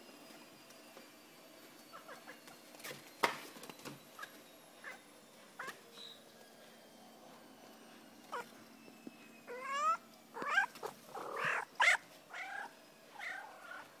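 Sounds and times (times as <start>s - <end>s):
cat chirping: 9.5s - 13.9s.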